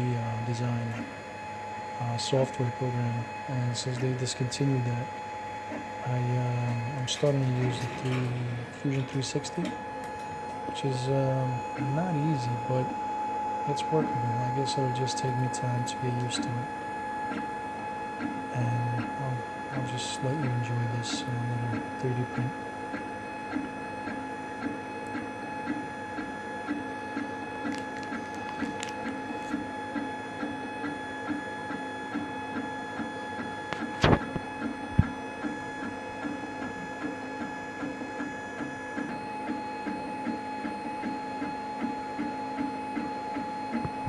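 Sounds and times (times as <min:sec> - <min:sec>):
steady high whine: 0:00.0 - 0:17.7.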